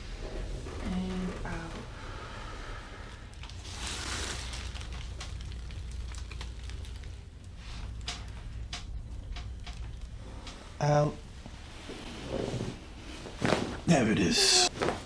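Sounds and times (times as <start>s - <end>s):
faint rustling: 0.0s - 15.0s
low steady hum: 0.0s - 15.0s.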